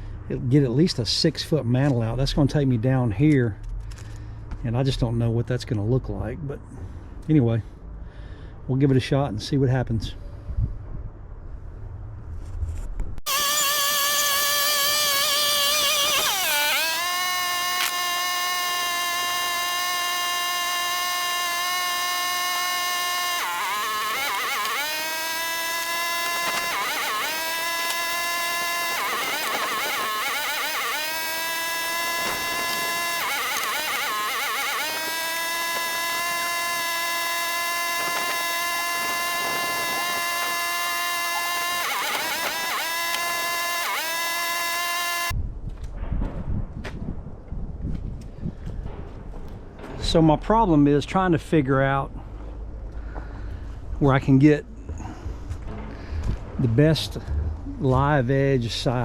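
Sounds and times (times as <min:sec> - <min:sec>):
band sawmill whine: 0:13.3 - 0:45.3, 0:49.8 - 0:59.0.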